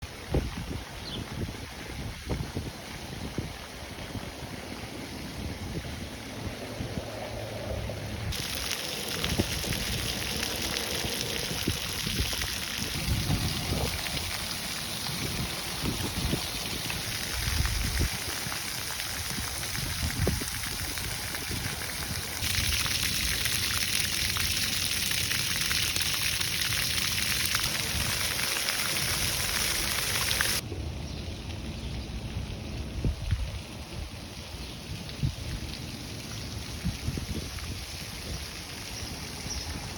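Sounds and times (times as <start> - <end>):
water jets spraying: 8.3 - 30.6.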